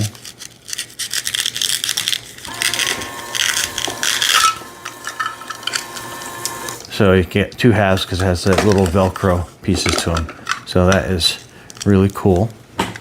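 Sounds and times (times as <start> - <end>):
velcro tearing: 0.0 - 2.5.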